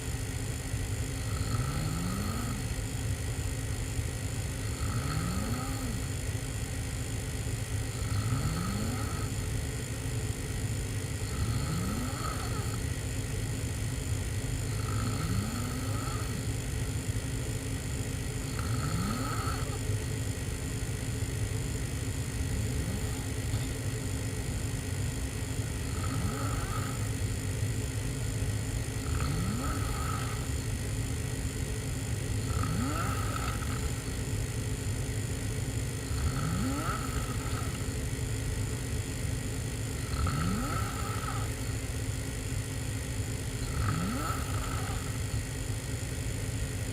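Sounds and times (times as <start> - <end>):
person snoring heavily: 1.0 - 3.5, 4.4 - 6.7, 7.7 - 10.0, 11.0 - 13.4, 14.5 - 20.7, 22.2 - 28.2, 28.8 - 31.0, 31.8 - 34.4, 35.9 - 38.2, 39.7 - 45.6.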